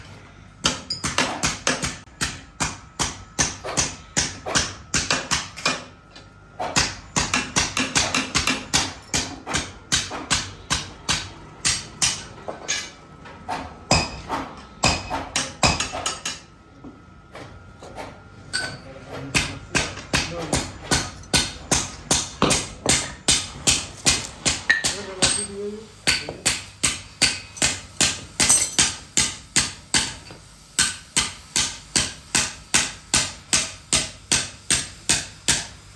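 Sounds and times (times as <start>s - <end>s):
hammer striking steel on anvil: 0.6s - 5.9s, 6.8s - 12.9s, 13.9s - 16.4s, 18.5s - 35.8s.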